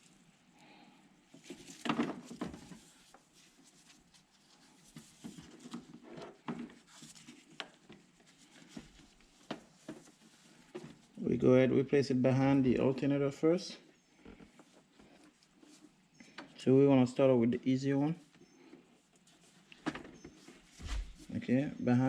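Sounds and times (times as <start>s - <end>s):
rubber belt knocks and rustles: 1.3s - 4.0s, 4.8s - 11.2s, 19.2s - 21.4s.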